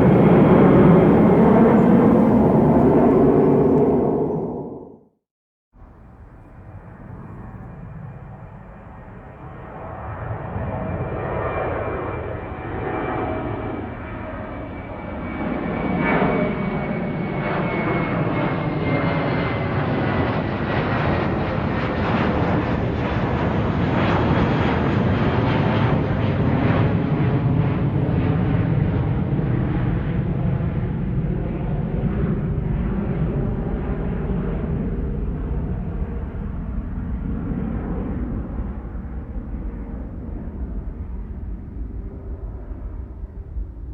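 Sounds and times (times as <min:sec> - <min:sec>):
airplane engines roaring: 0:00.0 - 0:05.1, 0:05.8 - 0:43.9
high engine whine: 0:00.0 - 0:05.1.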